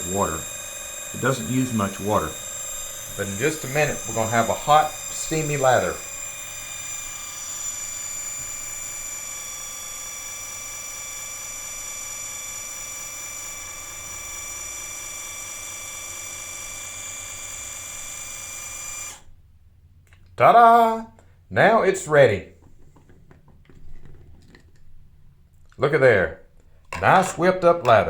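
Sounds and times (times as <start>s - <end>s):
small motor whining: 0.0s - 19.4s.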